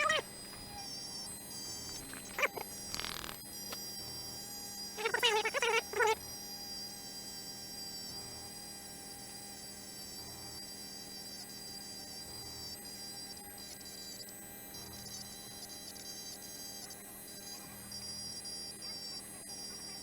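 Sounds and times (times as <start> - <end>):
rotary tool whining: 0.0 - 3.8.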